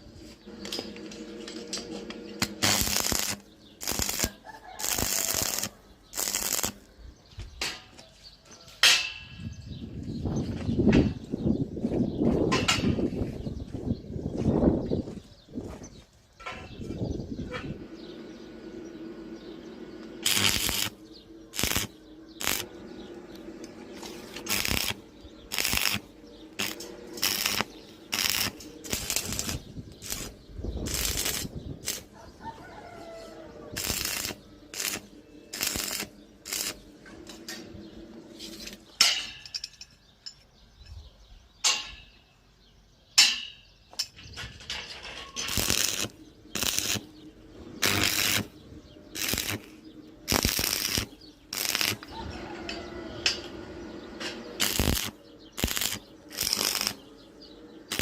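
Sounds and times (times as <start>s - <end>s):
harsh metalworking bursts: 0.4s - 6.9s, 16.5s - 39.3s, 45.4s - 58.0s
steady low hum: 16.8s - 39.6s, 45.5s - 58.0s.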